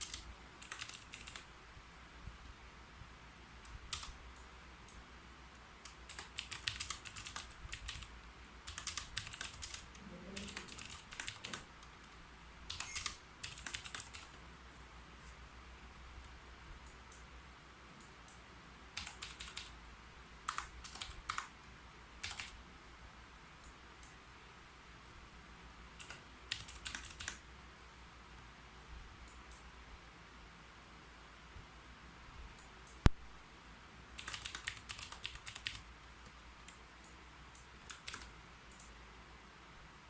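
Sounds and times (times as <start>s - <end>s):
typing on a keyboard: 0.0s - 1.5s, 3.9s - 5.0s, 5.8s - 14.4s, 19.0s - 19.8s, 20.4s - 21.6s, 22.2s - 22.6s, 26.0s - 27.4s, 34.2s - 35.9s, 37.6s - 39.0s.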